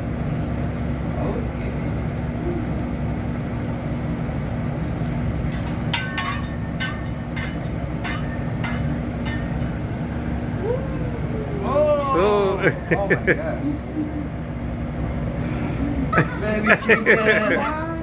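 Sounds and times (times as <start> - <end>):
low hum: 5.4 - 18.0
metal spatulas clinking on griddle: 5.5 - 9.8, 16.2 - 18.0.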